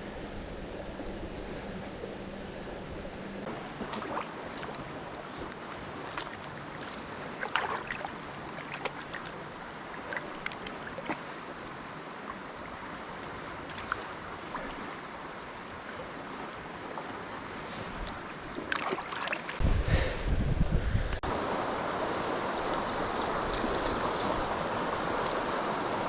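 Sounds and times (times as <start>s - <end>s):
river rushing: 0.0s - 19.7s, 21.3s - 26.0s
water splashing: 2.0s - 19.8s.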